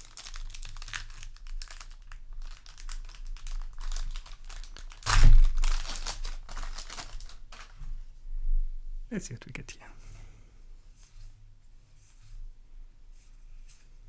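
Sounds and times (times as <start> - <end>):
wrapper crinkling: 0.0 - 8.0
loud rustle and thump: 3.9 - 8.0.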